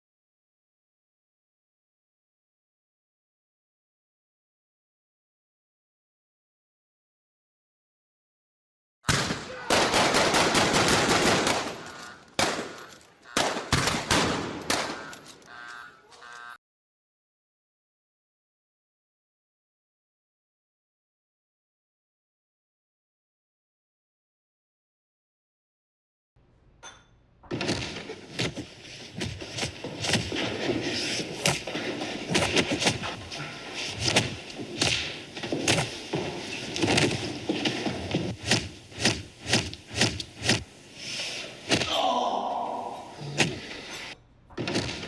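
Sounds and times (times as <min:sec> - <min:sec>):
automatic gunfire: 0:09.1 - 0:15.2
gunshots: 0:09.1 - 0:15.4, 0:27.5 - 0:45.0
continuous noisy din: 0:27.5 - 0:45.0.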